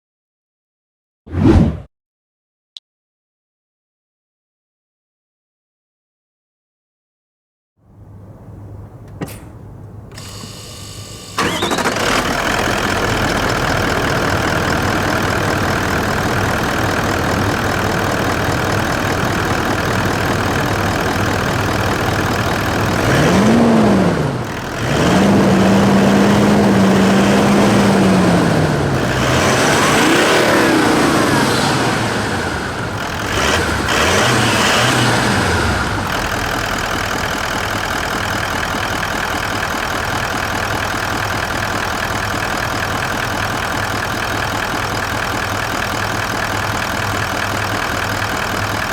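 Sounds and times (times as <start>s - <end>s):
diesel engine idling and revving: 8.0s - 48.9s
starter cranking: 10.1s - 23.8s.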